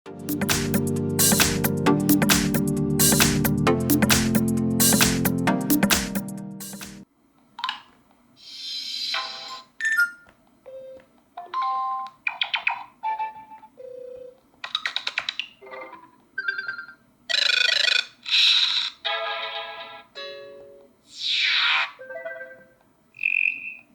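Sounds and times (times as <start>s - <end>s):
phone notification chimes and beeps: 9.2s - 12.0s, 22.0s - 22.8s.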